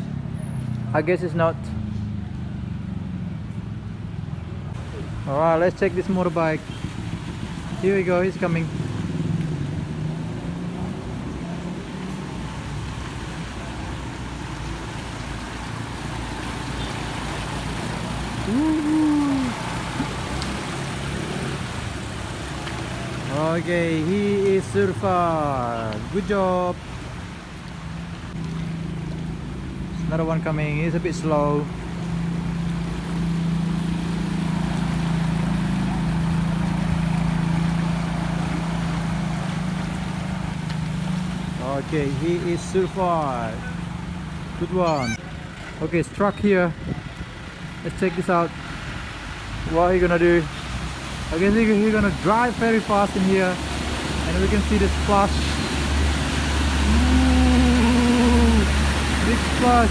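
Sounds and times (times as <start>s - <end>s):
floodwater rushing: 1.5s - 45.5s, 47.4s - 59.9s
water washing: 2.0s - 45.2s, 48.1s - 59.9s
motorbike engine hum: 6.6s - 24.4s, 55.6s - 59.9s.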